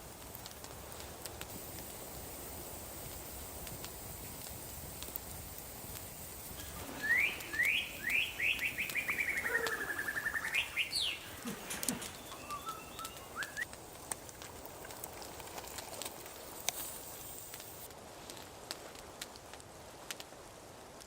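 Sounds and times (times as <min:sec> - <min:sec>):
bird singing: 0:07.0 - 0:13.6.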